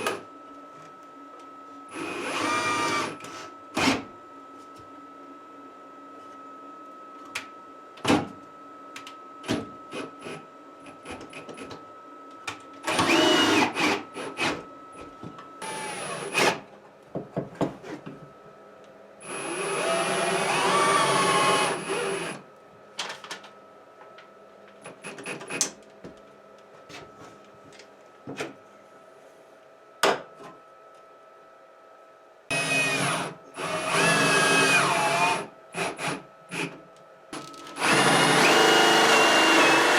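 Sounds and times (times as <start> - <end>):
power drill driving screws: 12.9 - 14.5, 32.5 - 36.2, 37.8 - 39.9.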